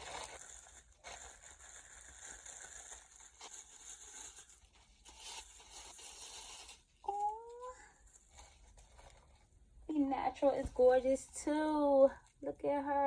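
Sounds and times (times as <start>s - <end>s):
packaging rustling and tearing: 0.0s - 9.5s.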